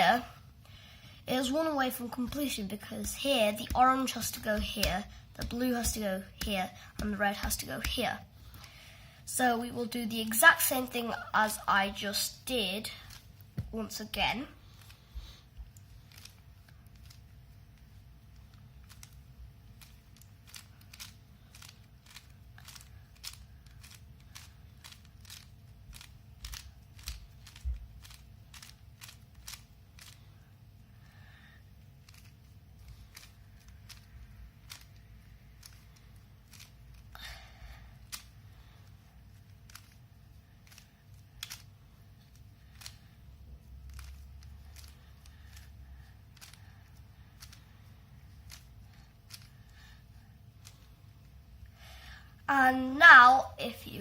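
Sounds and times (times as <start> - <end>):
low steady hum: 0.0 - 54.0
puzzle cube clicks and clacks: 1.5 - 8.7, 11.5 - 30.4, 32.0 - 37.4, 38.0 - 38.4, 39.4 - 50.0.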